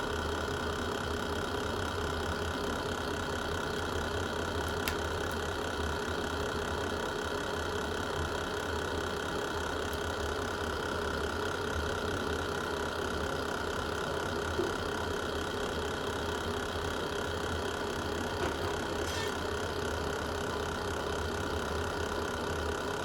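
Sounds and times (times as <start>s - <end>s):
fire crackle: 4.6s - 6.1s.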